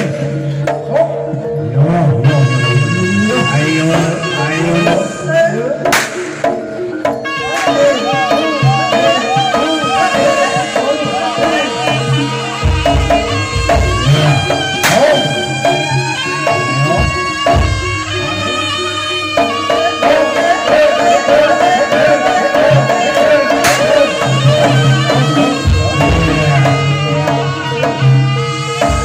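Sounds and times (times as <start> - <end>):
drum strokes: 0.0 - 29.0
wind instrument melody: 0.0 - 29.0
low gong beats: 24.3 - 29.0.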